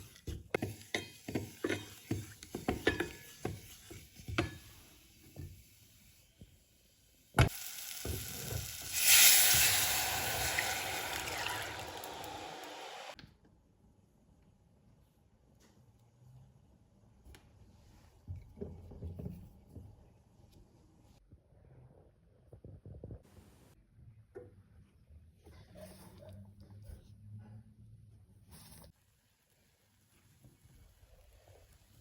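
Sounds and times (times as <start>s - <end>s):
loud sizzle: 7.3s - 13.2s.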